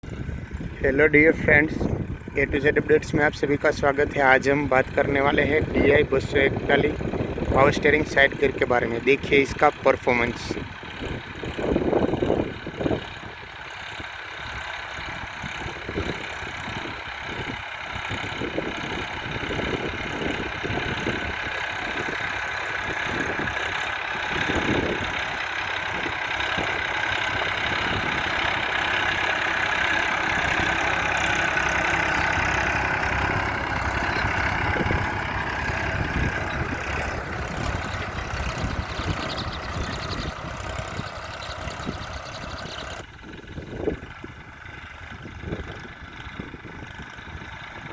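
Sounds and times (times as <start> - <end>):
tractor diesel engine running: 0.0 - 47.9.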